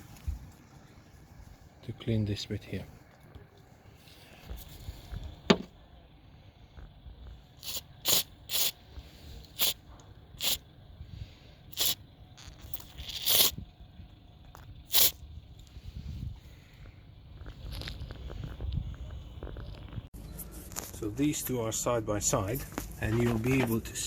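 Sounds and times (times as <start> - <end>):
aerosol can spraying: 7.6 - 8.8, 9.5 - 9.8, 10.4 - 10.6, 11.7 - 12.0, 12.7 - 13.6, 14.9 - 15.2.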